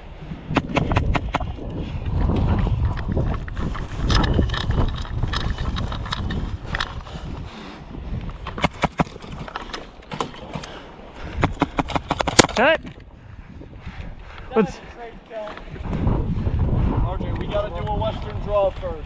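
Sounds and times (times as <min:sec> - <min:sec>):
wind on microphone: 0:00.0 - 0:19.0
rustling movement: 0:08.2 - 0:12.6.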